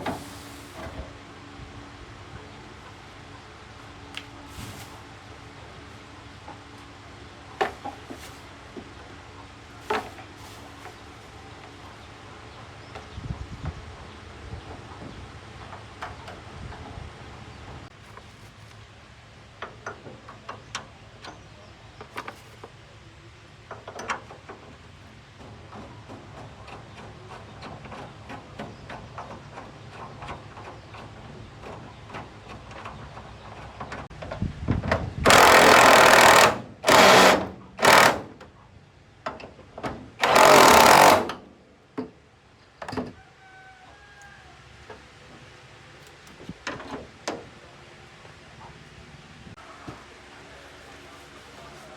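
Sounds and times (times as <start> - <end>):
power tool bursts: 35.2 - 38.4, 40.2 - 41.5.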